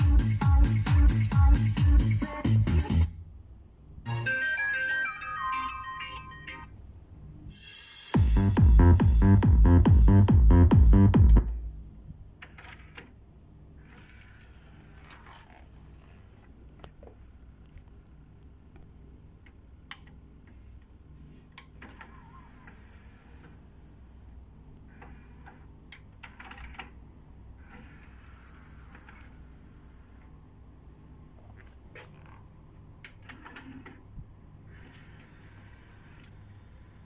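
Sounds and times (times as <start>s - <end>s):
bass-heavy music from stereo: 0.0s - 3.1s, 8.0s - 11.7s.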